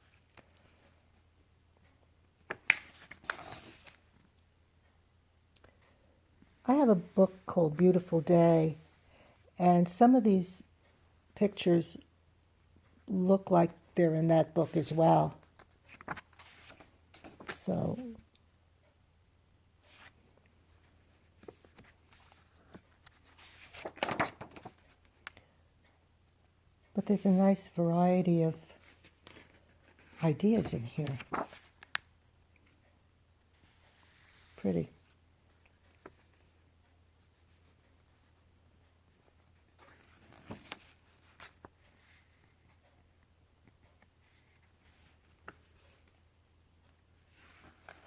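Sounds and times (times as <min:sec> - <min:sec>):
low steady hum: 0:00.0 - 0:48.0
soft clicks of book handling: 0:01.8 - 0:04.5, 0:15.4 - 0:18.0, 0:19.8 - 0:26.0, 0:28.7 - 0:32.9, 0:33.6 - 0:38.4, 0:39.1 - 0:46.2, 0:46.8 - 0:48.0
paper page rustle: 0:15.9 - 0:17.6, 0:21.4 - 0:25.0, 0:28.7 - 0:32.0, 0:39.8 - 0:42.2.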